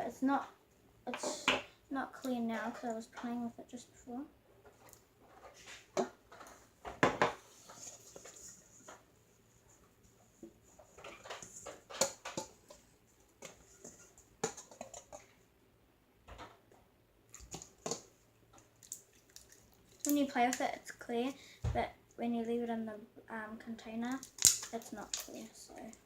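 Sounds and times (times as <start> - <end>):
sticky slime clicks and crackles: 24.1 - 25.4.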